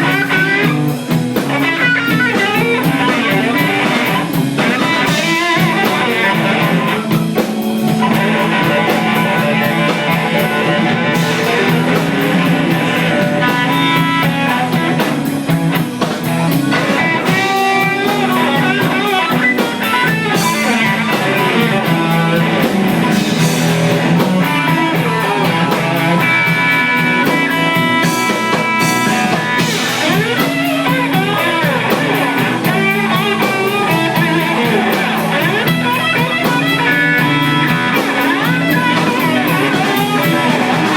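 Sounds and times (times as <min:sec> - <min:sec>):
electric guitar bending notes: 0:00.0 - 0:40.9
live blues band playing: 0:00.0 - 0:40.9.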